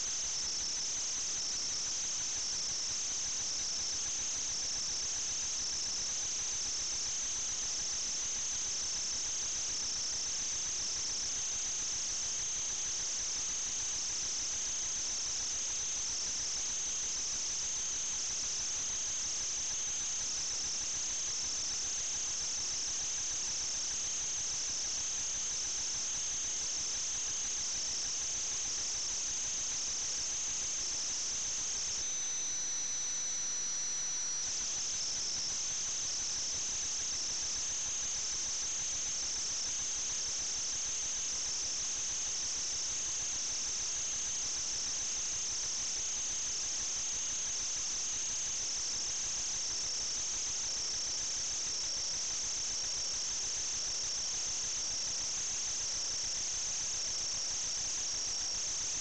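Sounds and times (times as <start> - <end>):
insects chirring: 30.4 - 39.7.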